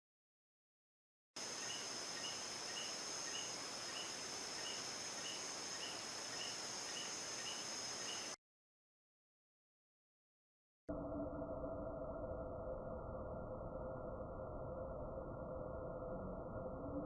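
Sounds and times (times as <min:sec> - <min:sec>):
night insect chorus: 0:01.4 - 0:08.4
short insect chirp: 0:01.4 - 0:08.4.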